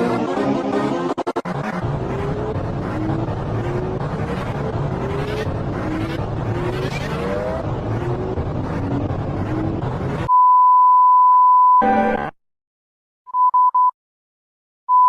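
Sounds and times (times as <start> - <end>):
loud steady rumble: 0.0 - 10.3.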